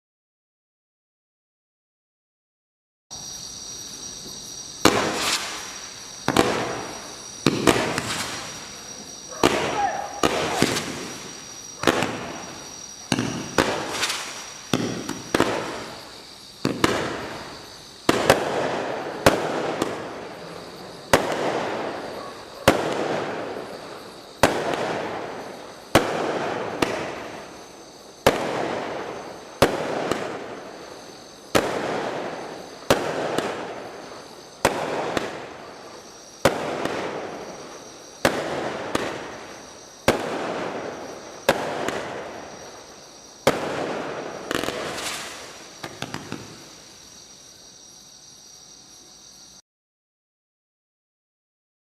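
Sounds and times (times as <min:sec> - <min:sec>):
firework cake bangs: 0:04.8 - 0:27.5, 0:28.2 - 0:35.5, 0:36.4 - 0:42.7, 0:43.4 - 0:46.7.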